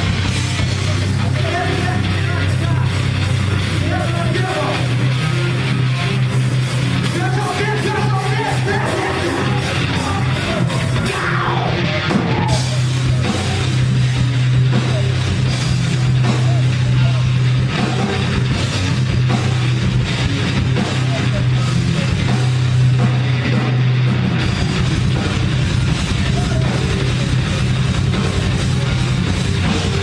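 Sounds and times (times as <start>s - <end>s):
heavy metal band playing: 0.0s - 30.0s.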